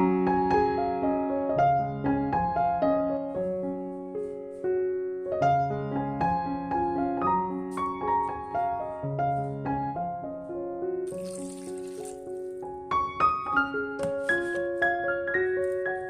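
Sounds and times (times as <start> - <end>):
slow gentle piano music: 0.0 - 16.0.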